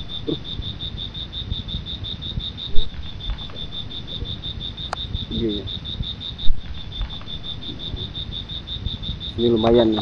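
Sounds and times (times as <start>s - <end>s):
low rumble: 0.0s - 9.8s
cricket chirping: 0.0s - 10.0s.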